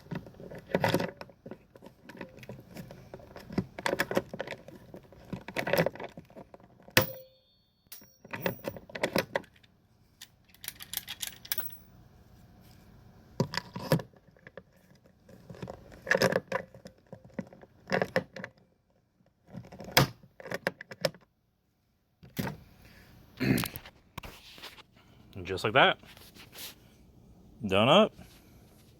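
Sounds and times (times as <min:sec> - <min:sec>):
sharp metallic clink: 0:07.0 - 0:08.8
hand tool clicking and rattling: 0:10.2 - 0:11.8.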